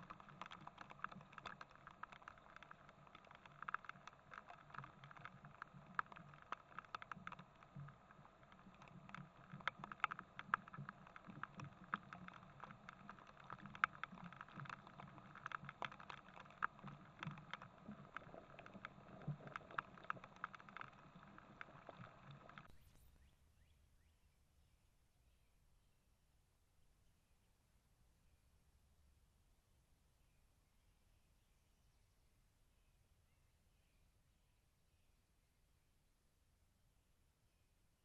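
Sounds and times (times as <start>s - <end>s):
hailstones striking: 0.0s - 23.0s
faint steady patter: 0.0s - 23.2s.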